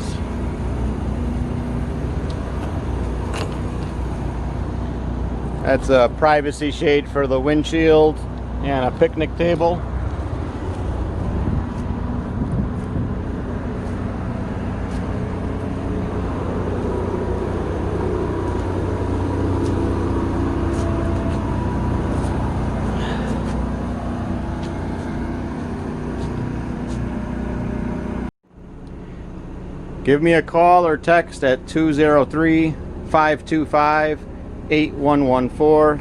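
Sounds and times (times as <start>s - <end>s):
engine droning: 0.0s - 36.0s.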